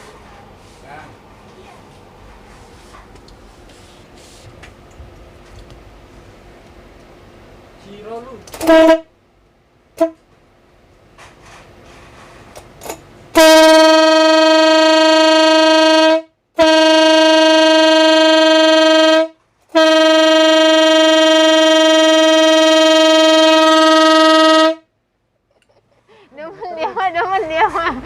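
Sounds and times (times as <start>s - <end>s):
air horn blasts: 8.5s - 9.2s, 9.9s - 10.3s, 13.3s - 24.9s.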